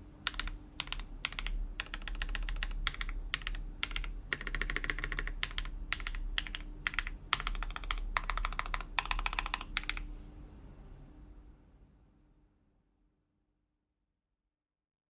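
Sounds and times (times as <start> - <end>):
typing on mechanical keyboard: 0.2 - 10.1.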